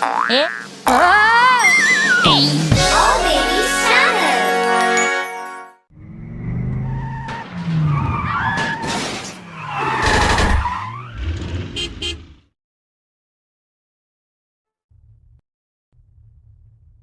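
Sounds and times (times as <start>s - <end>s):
cartoon crashes and scrapes: 8.5s - 11.2s.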